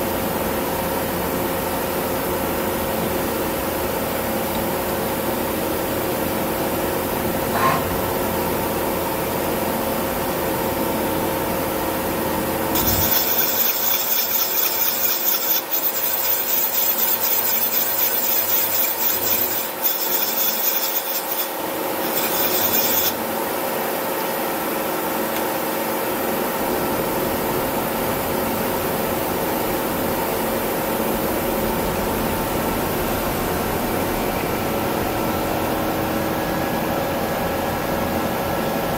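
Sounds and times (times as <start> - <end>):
lathe humming and whining: 6.3 - 24.9
high rasping hiss: 12.8 - 23.2.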